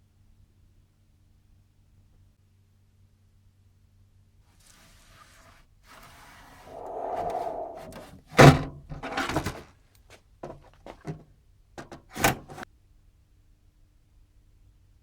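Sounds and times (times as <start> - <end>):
rustle: 4.6 - 8.0.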